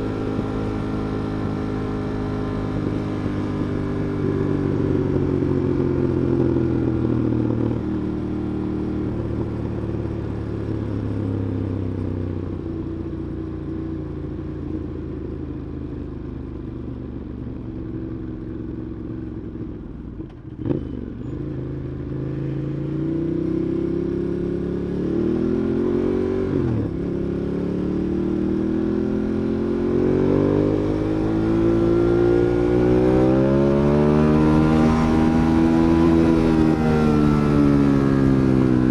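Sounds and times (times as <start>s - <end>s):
motorcycle engine shifting gears: 30.5s - 38.9s.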